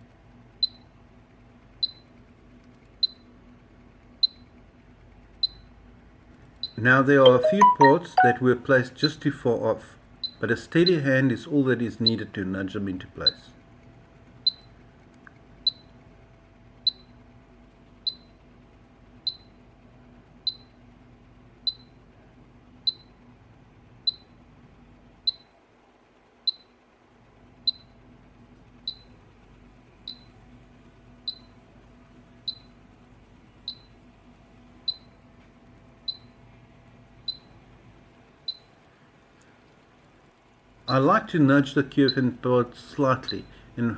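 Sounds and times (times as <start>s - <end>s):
high electronic beeps: 7.2s - 8.4s
faint hum: 28.8s - 43.9s.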